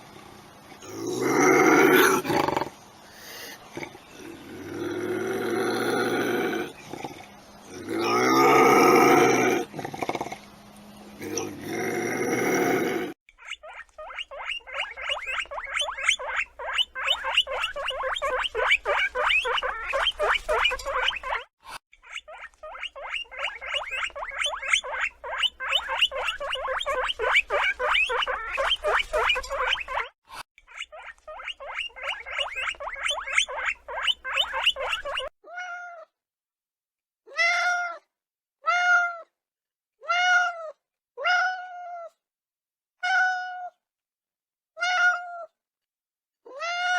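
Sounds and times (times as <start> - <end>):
high chattering animal calls: 0.1 - 10.5, 11.2 - 35.3
cat meowing: 35.4 - 36.1, 37.3 - 38.0, 38.6 - 39.3, 40.0 - 42.1, 43.0 - 43.7, 44.8 - 45.5, 46.5 - 46.9.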